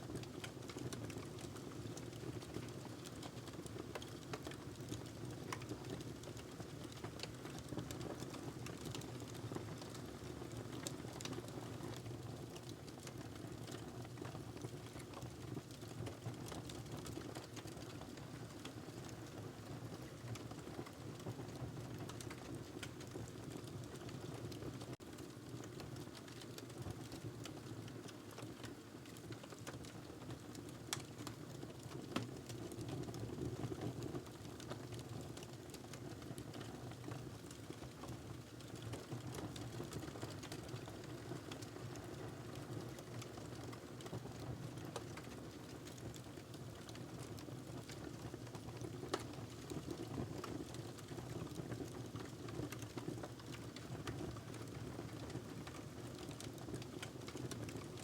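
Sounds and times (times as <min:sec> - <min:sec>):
wood fire crackling: 0:00.1 - 0:58.0.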